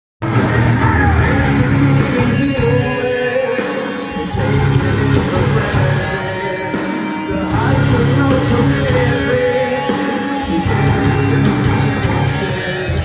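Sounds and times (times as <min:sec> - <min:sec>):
drums: 0:00.2 - 0:13.0
guitars: 0:00.2 - 0:13.0
person singing: 0:00.2 - 0:13.0.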